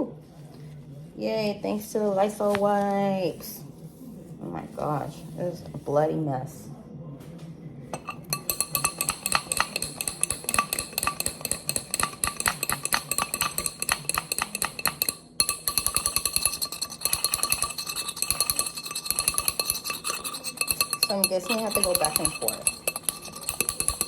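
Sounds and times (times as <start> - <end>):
metal strainer clinking in container: 8.0 - 24.0.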